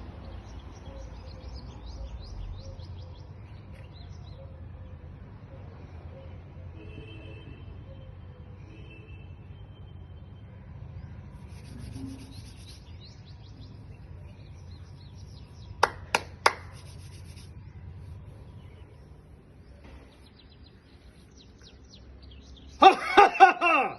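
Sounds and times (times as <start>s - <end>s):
small birds chirping: 0.0s - 4.8s, 11.0s - 23.2s.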